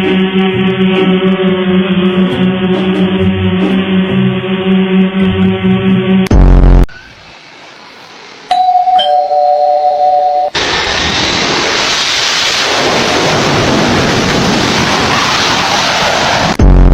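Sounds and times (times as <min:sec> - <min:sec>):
loud steady rushing noise: 0:00.0 - 0:09.0, 0:10.5 - 0:16.9
doorbell click: 0:08.5 - 0:10.6
two-tone doorbell chime: 0:08.5 - 0:10.6.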